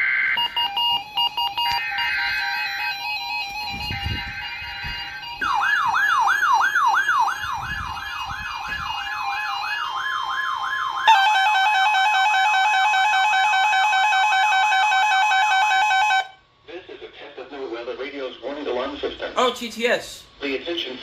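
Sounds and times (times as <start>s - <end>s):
falling siren-like alarm sweep: 0.0s - 16.4s
loud steady alarm tones: 0.0s - 16.4s
high beeping tones: 0.4s - 6.4s.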